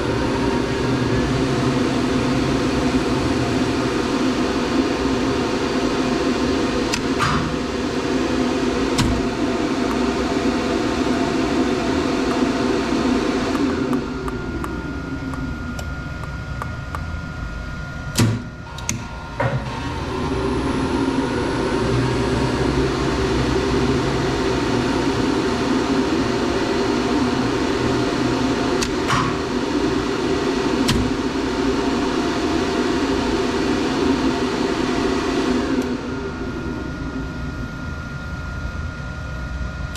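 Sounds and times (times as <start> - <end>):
elevator machinery humming: 0.0 - 39.9.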